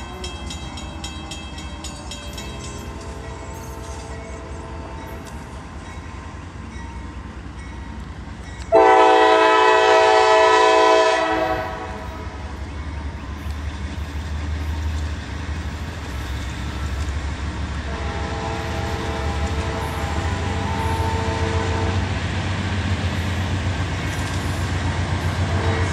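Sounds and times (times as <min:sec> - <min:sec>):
low rumble of passing train: 0:00.0 - 0:25.9
locomotive air horn chord: 0:08.7 - 0:12.4, 0:17.9 - 0:22.1, 0:25.4 - 0:25.9.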